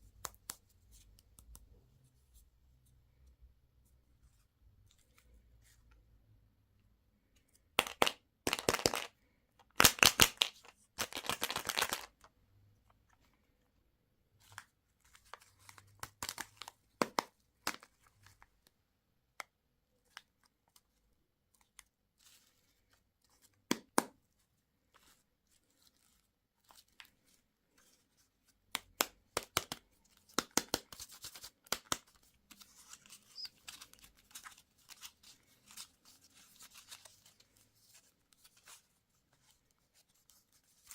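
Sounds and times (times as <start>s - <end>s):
candy wrappers tearing and crinkling: 9.8s - 12.1s.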